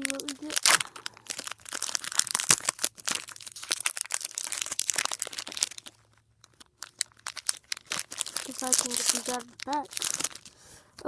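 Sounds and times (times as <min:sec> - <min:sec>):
foil wrapper crinkling and tearing: 0:00.0 - 0:11.0.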